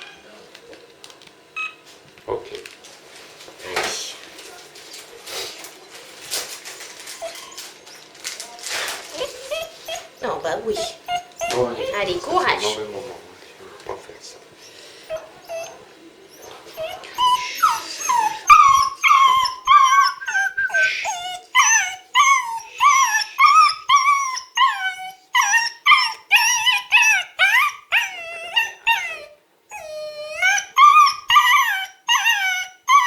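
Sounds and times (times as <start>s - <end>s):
puppy yelping wails: 9.2s - 12.8s, 15.1s - 33.0s.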